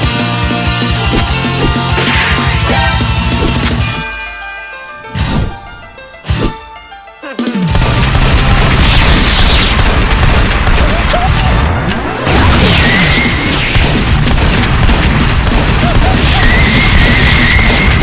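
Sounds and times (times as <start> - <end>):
action soundtrack music: 0.0 - 18.0
booming crashing effects: 7.7 - 18.0.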